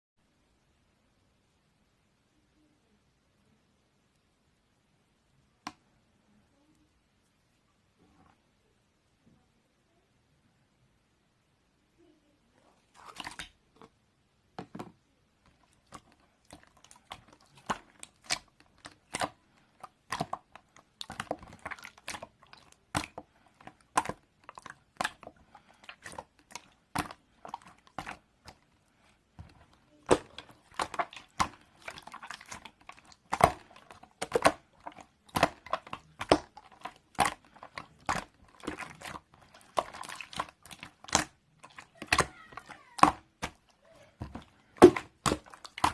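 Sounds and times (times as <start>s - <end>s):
crinkling: 15.4s - 45.9s.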